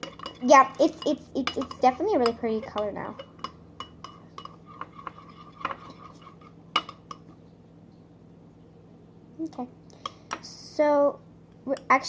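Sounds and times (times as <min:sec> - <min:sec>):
spoon clinking against bowl: 0:00.0 - 0:07.2
spoon stirring glue in bowl: 0:00.0 - 0:07.3.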